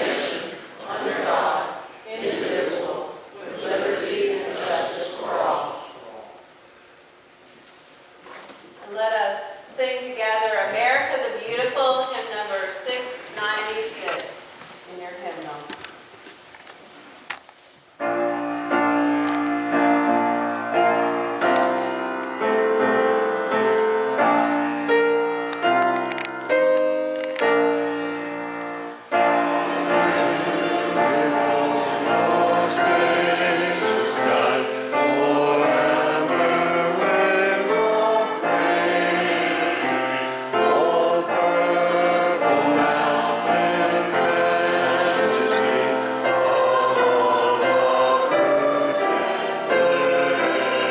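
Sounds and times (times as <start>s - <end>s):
choir singing a hymn: 0.0s - 6.4s, 18.2s - 50.9s
piano chords: 18.0s - 50.9s.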